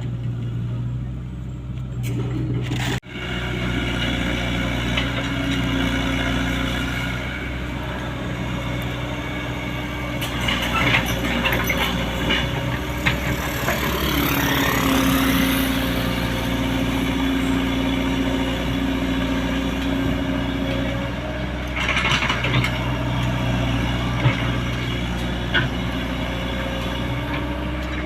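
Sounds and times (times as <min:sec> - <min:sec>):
engine whine: 0:00.0 - 0:28.0
excavator diesel engine running: 0:00.0 - 0:28.0
clanks and knocks: 0:10.2 - 0:14.1.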